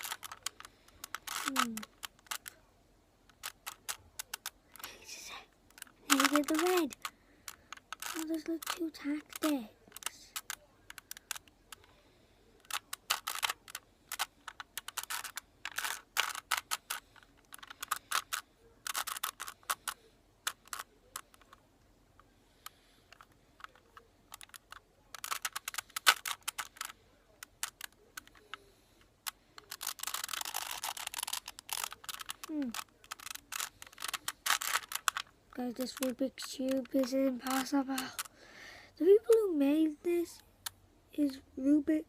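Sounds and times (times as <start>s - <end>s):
puzzle cube clicking and rattling: 0.0s - 2.6s, 3.2s - 12.0s, 12.6s - 42.0s.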